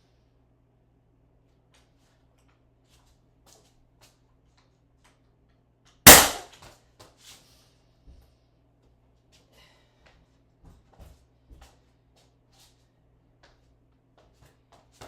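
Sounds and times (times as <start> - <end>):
nail gun bang: 6.1 - 6.5.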